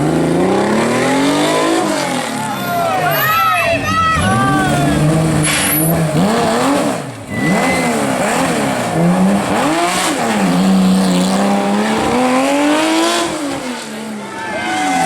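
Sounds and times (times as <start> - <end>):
rally car engine revving: 0.0 - 15.0.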